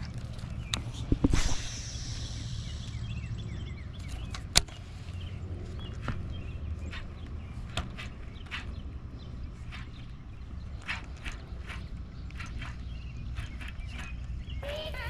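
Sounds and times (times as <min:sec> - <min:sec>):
low rumble: 0:00.0 - 0:14.6
fishing line hiss: 0:01.0 - 0:03.2.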